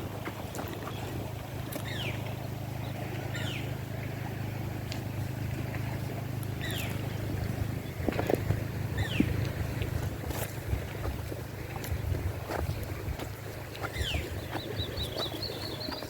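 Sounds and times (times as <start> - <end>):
wind rumble on microphone: 0.0 - 16.0.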